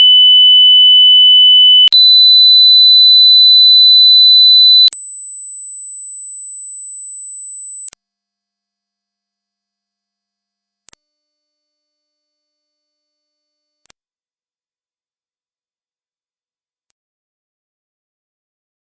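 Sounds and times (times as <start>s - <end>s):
high pure sine tones: 10.8s - 13.9s.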